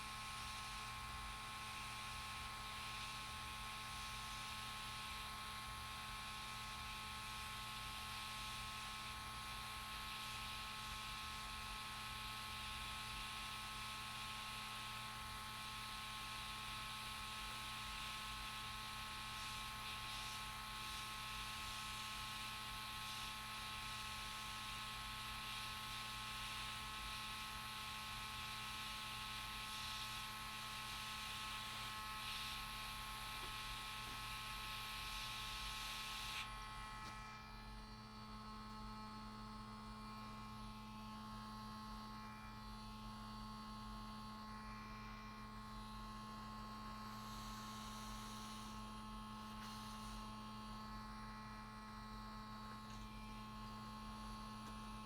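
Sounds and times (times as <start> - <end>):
electrical hum with tones: 31.4 - 55.0.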